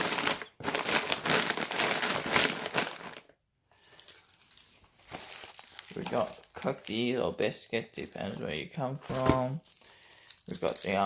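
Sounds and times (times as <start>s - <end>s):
snack packaging crinkling: 0.0s - 11.0s.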